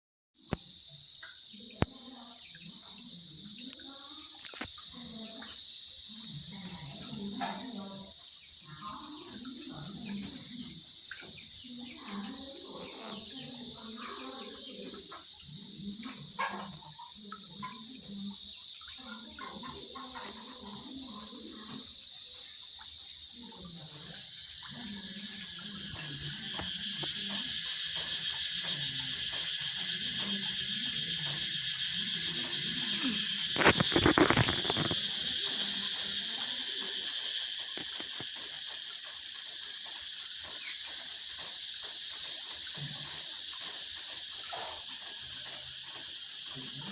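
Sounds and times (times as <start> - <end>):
cicadas droning: 0.4 - 46.9.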